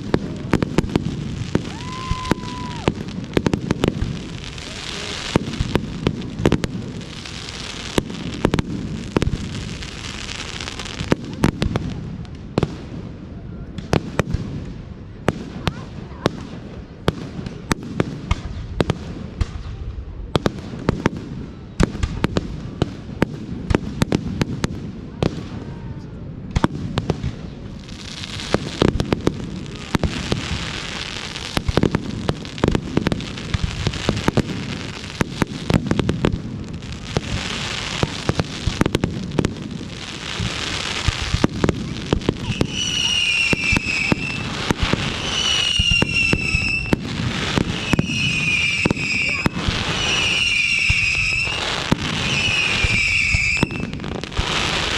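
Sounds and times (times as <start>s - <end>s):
fireworks whistles: 0.0s - 11.5s, 28.0s - 54.9s
fireworks bangs and pops: 0.0s - 54.9s
fireworks crackling hiss: 0.0s - 54.9s.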